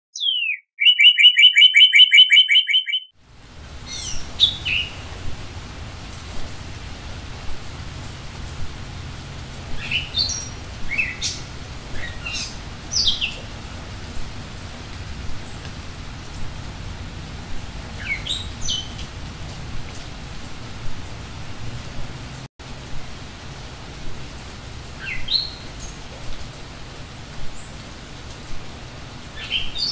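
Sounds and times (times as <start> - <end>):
songbirds chirping: 0.1 - 3.1
fast bird trill: 0.2 - 3.1.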